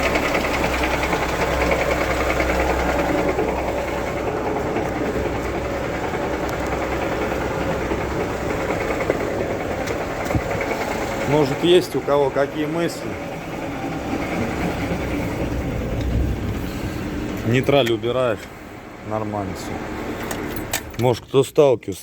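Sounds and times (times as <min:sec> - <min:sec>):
rapid knocking from gearbox: 0:00.0 - 0:16.6
car engine running in gear: 0:00.0 - 0:21.5.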